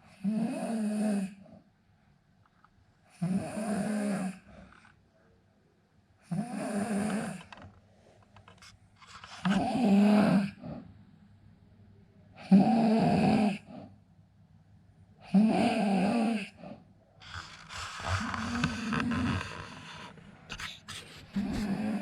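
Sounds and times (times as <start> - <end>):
man snoring: 3.2 - 4.5, 6.3 - 7.4, 9.4 - 10.6, 15.3 - 16.5, 17.2 - 22.0.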